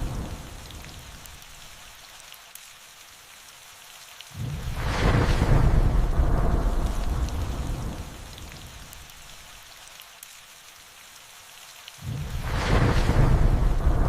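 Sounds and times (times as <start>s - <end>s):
thunder rumbling: 0.0s - 1.1s, 4.4s - 8.8s, 12.0s - 14.0s
raindrop ticks: 0.0s - 14.0s
steady rain falling: 0.0s - 14.0s.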